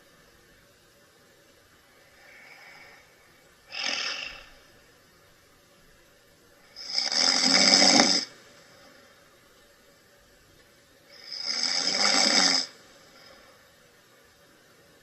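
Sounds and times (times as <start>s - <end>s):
faint breath: 2.0s - 4.8s, 12.8s - 13.8s
man snoring: 3.7s - 4.6s, 6.8s - 8.3s, 11.2s - 13.3s.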